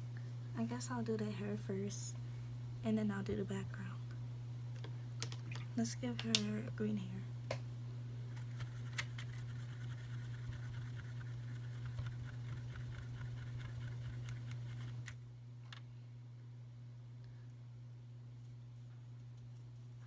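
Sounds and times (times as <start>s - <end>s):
low hum: 0.0s - 20.0s
brush scratching on paper: 8.4s - 15.0s.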